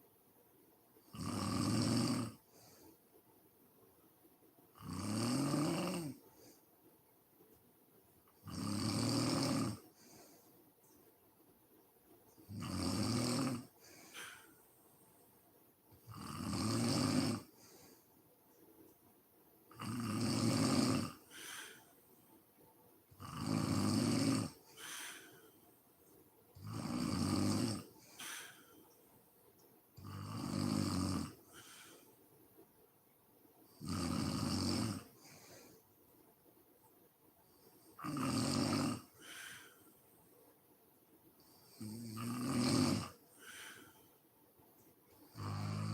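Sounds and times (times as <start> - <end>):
woman snoring: 1.1 - 2.4, 4.8 - 6.2, 8.4 - 10.0, 12.5 - 14.5, 16.0 - 17.9, 19.7 - 21.8, 23.2 - 25.4, 26.6 - 28.6, 30.0 - 32.0, 33.7 - 35.7, 37.9 - 39.8, 41.5 - 43.9, 45.3 - 45.9.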